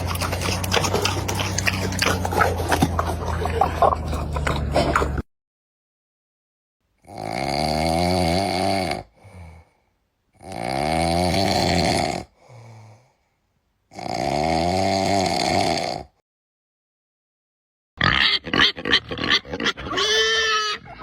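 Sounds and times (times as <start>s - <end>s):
pig calls: 0.0s - 5.2s, 18.0s - 21.0s.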